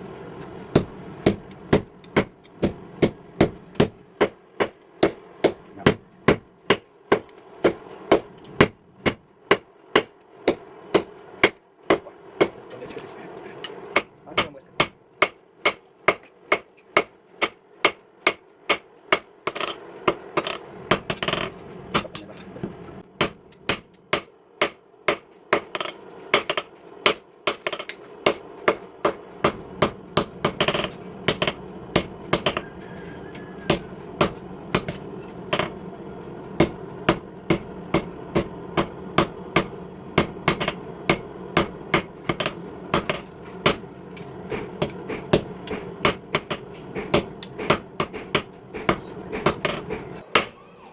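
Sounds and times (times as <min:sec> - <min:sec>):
steady hum: 0:00.0 - 0:50.9
hammer striking steel on anvil: 0:00.7 - 0:12.6, 0:13.6 - 0:22.3, 0:23.2 - 0:35.8, 0:36.6 - 0:43.9, 0:44.5 - 0:50.6.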